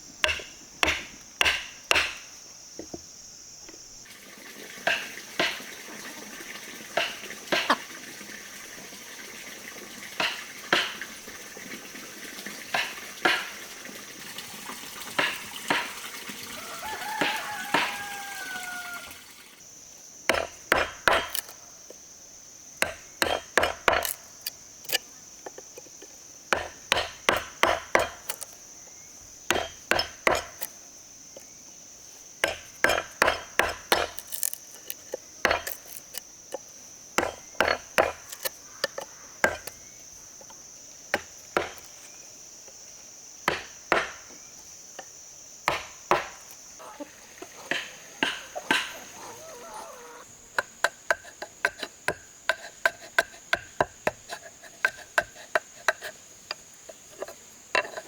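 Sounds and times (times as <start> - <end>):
hand tool striking wood: 0.2 - 3.0, 4.9 - 5.7, 7.0 - 7.8, 10.2 - 11.0, 12.7 - 13.6, 15.2 - 16.0, 17.2 - 18.4, 20.3 - 21.6, 22.8 - 24.3, 26.5 - 28.6, 29.5 - 30.7, 32.4 - 39.8, 41.2 - 42.0, 43.4 - 44.4, 45.6 - 46.6, 47.7 - 49.4, 50.6 - 58.0.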